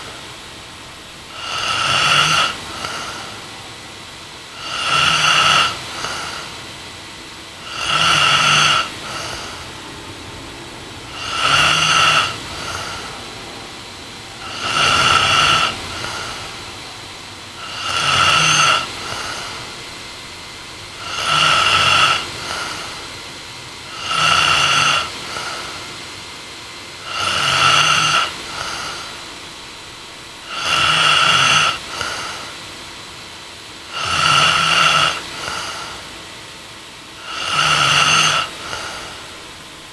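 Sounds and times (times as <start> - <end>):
woman snoring: 0.0 - 3.8, 4.5 - 6.7, 7.5 - 26.0, 27.0 - 32.7, 33.8 - 36.2, 37.2 - 39.5
soft breath: 7.6 - 23.3.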